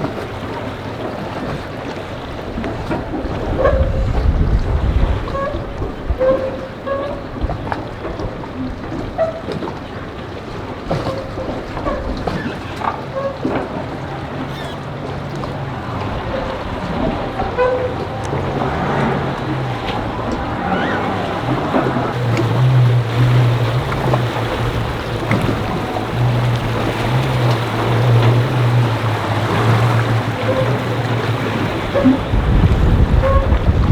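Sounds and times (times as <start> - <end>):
boat engine droning: 0.0 - 33.9
wind buffeting the microphone: 1.2 - 9.2, 13.7 - 33.9.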